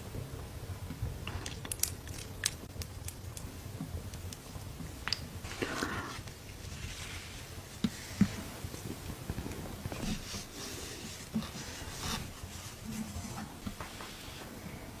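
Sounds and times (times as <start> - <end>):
brushing and scratching strokes: 5.4 - 8.6, 9.9 - 14.5.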